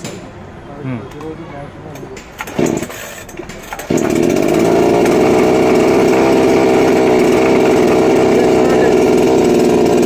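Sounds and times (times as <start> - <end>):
chainsaw engine running: 2.4 - 10.0.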